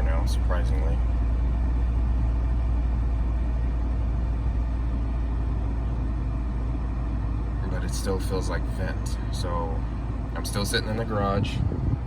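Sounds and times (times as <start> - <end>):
car engine idling: 0.0 - 12.0
air blower through vents: 7.3 - 12.0.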